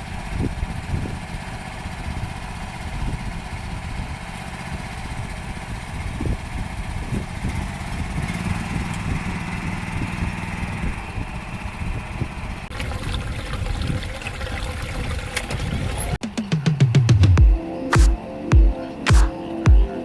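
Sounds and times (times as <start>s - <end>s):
rice transplanter engine running: 0.0s - 13.5s.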